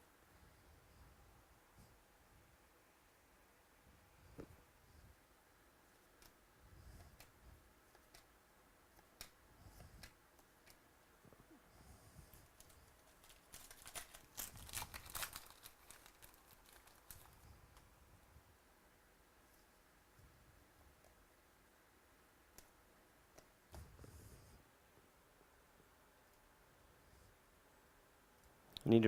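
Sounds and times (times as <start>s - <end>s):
foil wrapper crinkling and tearing: 12.5s - 17.4s.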